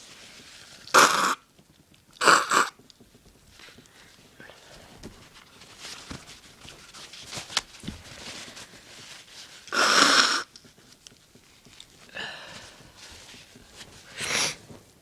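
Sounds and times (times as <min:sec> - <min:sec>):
person sniffing: 0:09.7 - 0:10.5, 0:14.1 - 0:14.7
forceful nasal breath burst: 0:14.1 - 0:14.6.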